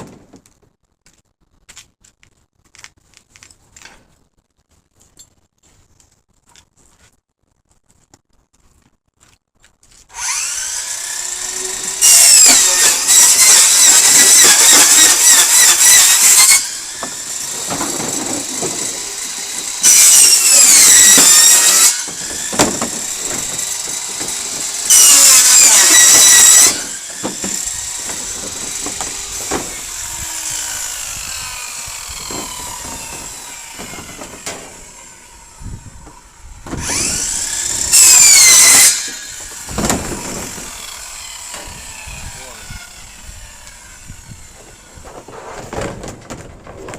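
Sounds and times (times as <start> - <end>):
circular saw cutting: 10.1 - 45.7.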